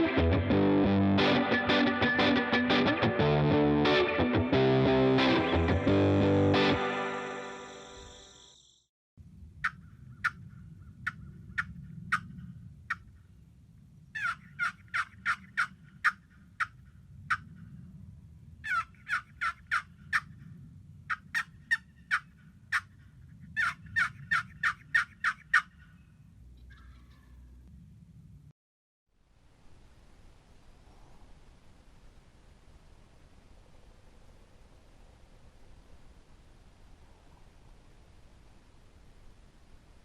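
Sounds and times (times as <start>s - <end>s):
turkey yelping: 11.1s - 12.3s, 14.2s - 17.4s, 18.6s - 20.3s, 21.1s - 22.9s, 23.6s - 25.9s, 26.6s - 27.3s.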